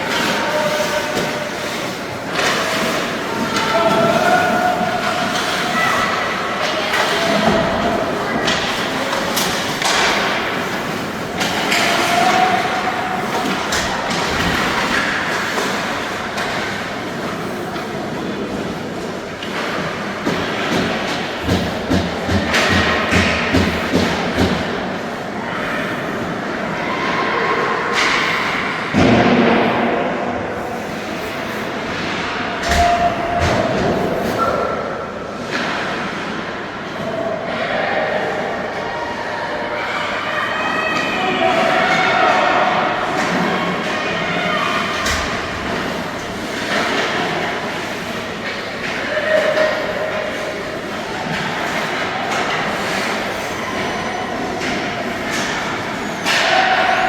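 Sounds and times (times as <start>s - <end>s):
hiss of play in a hall: 0.0s - 57.0s
hockey sticks and puck knocking: 6.6s - 18.8s, 19.4s - 24.8s
skates scraping on ice: 30.5s - 34.8s.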